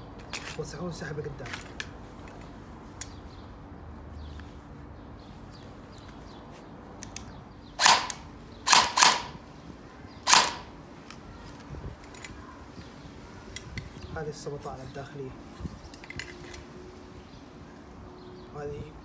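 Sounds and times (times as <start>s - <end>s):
plastic parts clacking: 0.2s - 0.7s, 1.4s - 3.1s, 10.3s - 12.4s, 15.9s - 16.6s.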